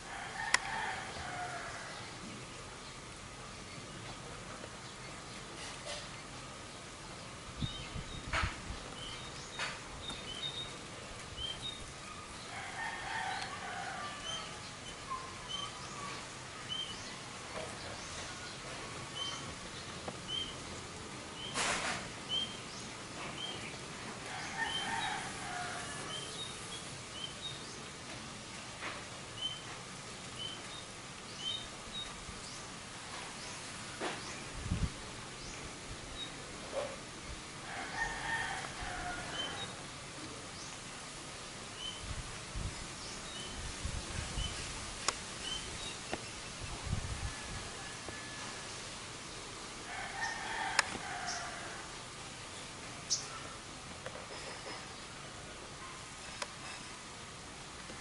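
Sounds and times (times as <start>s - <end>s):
small birds chirping: 0.5s - 12.6s, 14.2s - 21.6s.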